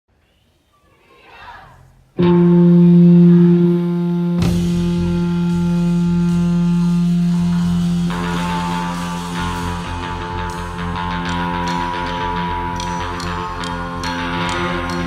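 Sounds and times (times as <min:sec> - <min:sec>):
held electric guitar note: 0:02.2 - 0:15.0
rock band playing: 0:02.2 - 0:15.0.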